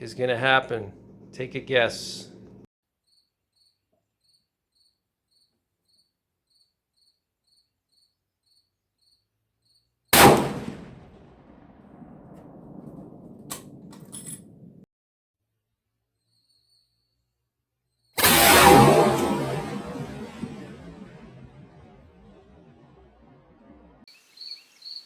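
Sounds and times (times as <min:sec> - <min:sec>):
crickets chirping faintly: 0:03.0 - 0:09.9, 0:16.2 - 0:17.3, 0:24.1 - 0:25.0
loud rifle shot: 0:10.2 - 0:14.8, 0:18.2 - 0:22.6.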